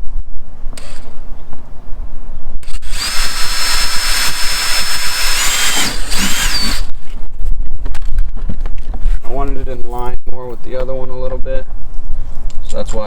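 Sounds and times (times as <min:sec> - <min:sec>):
power drill whining: 0:02.6 - 0:07.2.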